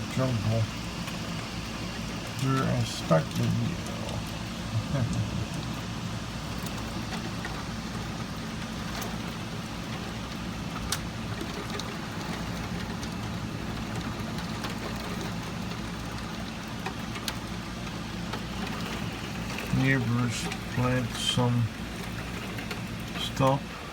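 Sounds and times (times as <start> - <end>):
low rumbling: 0.0 - 10.1
heavy rain pattering: 0.0 - 23.9.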